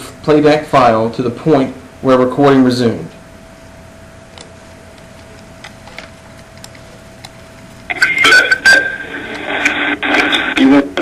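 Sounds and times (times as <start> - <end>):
steady hum: 0.0 - 11.0
recorded phone call playback: 7.8 - 11.0.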